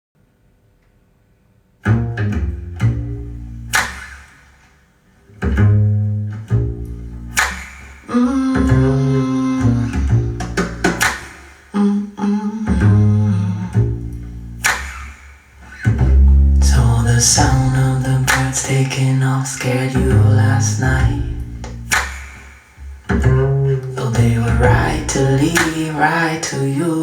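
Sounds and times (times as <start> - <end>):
plucked string notes: 1.8 - 4.1, 5.3 - 22.2, 22.8 - 26.4
low bass line: 1.9 - 3.8, 5.4 - 7.5, 8.2 - 11.2, 12.7 - 14.7, 15.8 - 22.0, 22.8 - 25.9
sharp percussive hits: 10.4 - 11.7, 14.6 - 15.6, 21.0 - 23.0.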